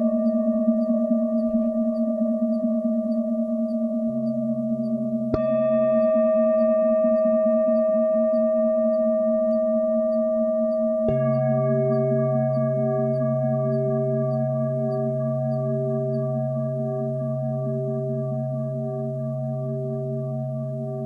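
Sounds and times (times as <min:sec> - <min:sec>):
singing bowls ringing: 0:00.0 - 0:21.0
singing bowl struck: 0:05.3 - 0:09.7, 0:11.0 - 0:16.7.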